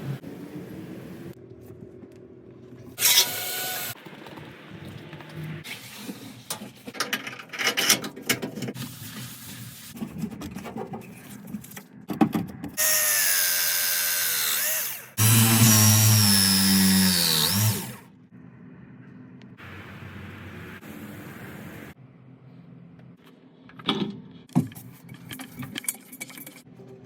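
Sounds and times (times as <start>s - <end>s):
power tool motor running: 3.0s - 4.0s, 12.8s - 18.0s.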